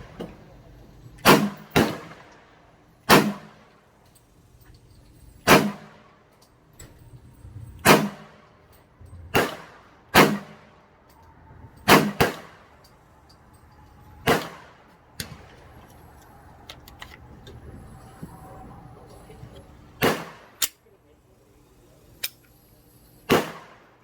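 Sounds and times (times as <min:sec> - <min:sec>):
handgun shots with echo: 0:01.2 - 0:02.3, 0:03.1 - 0:03.6, 0:05.5 - 0:06.0, 0:07.8 - 0:08.4, 0:09.3 - 0:10.7, 0:11.9 - 0:12.7, 0:14.2 - 0:15.5, 0:20.0 - 0:20.8, 0:23.3 - 0:23.9.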